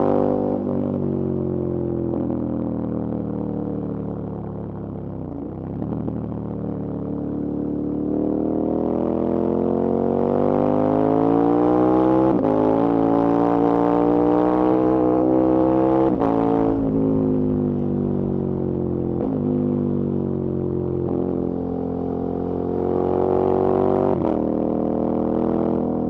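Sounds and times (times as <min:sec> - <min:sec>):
motorcycle engine accelerating: 0:05.4 - 0:26.0.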